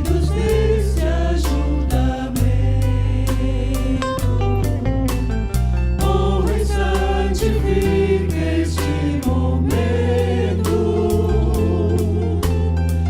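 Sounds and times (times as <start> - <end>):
voices singing together: 0.0 - 4.4, 6.0 - 13.0
bass line: 0.0 - 13.0
steady drum beat: 6.0 - 13.0.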